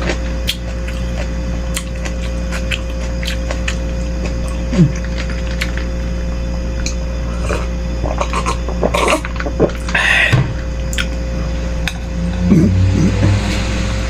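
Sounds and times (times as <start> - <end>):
steady low hum: 0.0 - 14.0
mouth and slurping noises: 1.7 - 6.0, 6.8 - 11.2.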